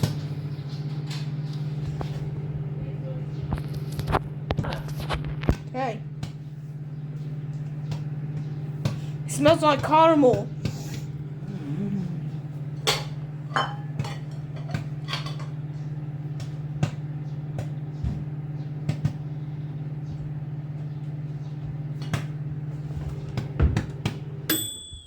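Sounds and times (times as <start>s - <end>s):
microwave oven humming: 0.0s - 25.0s
popcorn popping: 3.5s - 6.5s, 12.6s - 19.4s, 23.2s - 25.0s.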